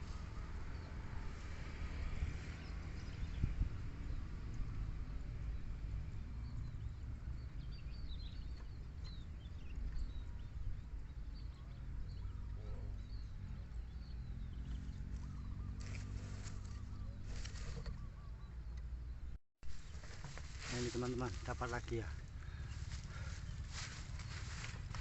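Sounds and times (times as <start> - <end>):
small birds chirping: 2.4 - 25.0
steady low rumble: 19.2 - 25.0.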